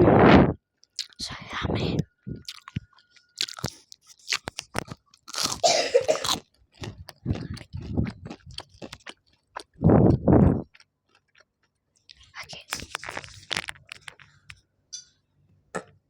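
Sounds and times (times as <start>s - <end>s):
crunchy bites and chewing: 0.8s - 1.2s, 2.4s - 14.6s.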